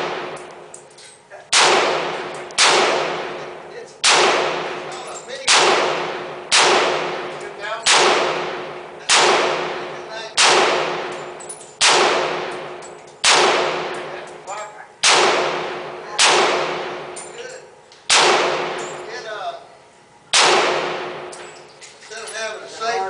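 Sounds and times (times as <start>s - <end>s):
rifle shots with ringing tail: 0.0s - 0.6s, 1.5s - 14.4s, 15.0s - 17.4s, 18.1s - 19.2s, 20.3s - 21.6s.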